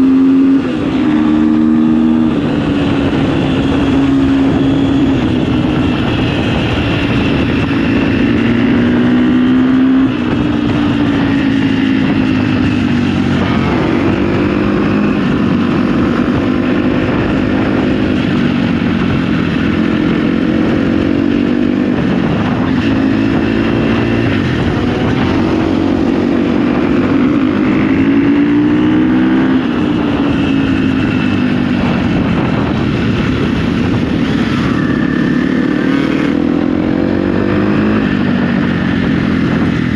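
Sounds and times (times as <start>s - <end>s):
dirt bike engine revving: 0.0s - 39.9s.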